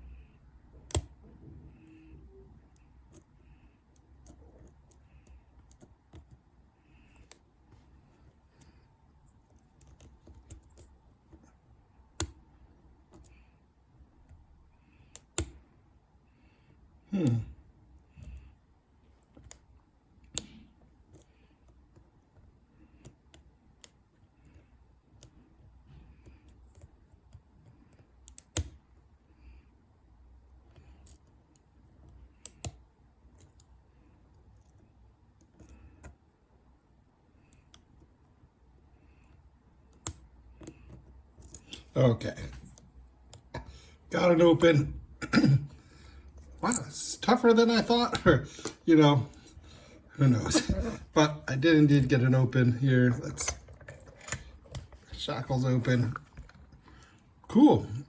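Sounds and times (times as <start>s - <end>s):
lock pick clicks and taps: 0.8s - 1.2s, 12.2s - 12.4s, 15.1s - 15.6s, 19.2s - 22.1s, 23.0s - 24.6s, 26.2s - 28.8s, 30.7s - 33.7s, 39.2s - 41.9s, 53.3s - 55.1s.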